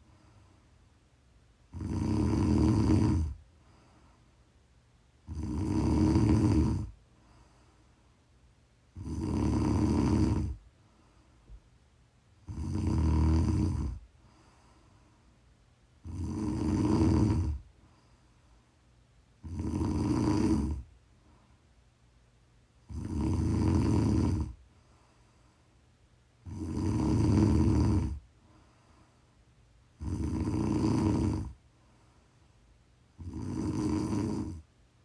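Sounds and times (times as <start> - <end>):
woman snoring: 1.7 - 3.4, 5.2 - 7.0, 9.0 - 10.6, 12.4 - 14.0, 16.0 - 17.7, 19.4 - 20.9, 22.9 - 24.6, 26.4 - 28.2, 30.0 - 31.6, 33.2 - 34.7.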